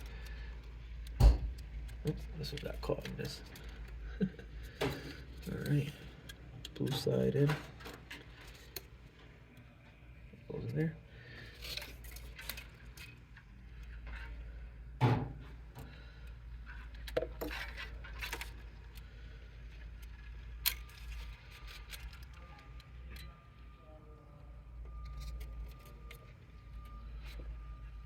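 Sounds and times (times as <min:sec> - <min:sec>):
cables and plastic parts clicking: 0:00.0 - 0:09.7, 0:11.5 - 0:14.0, 0:15.8 - 0:23.4
low steady hum: 0:00.0 - 0:28.0.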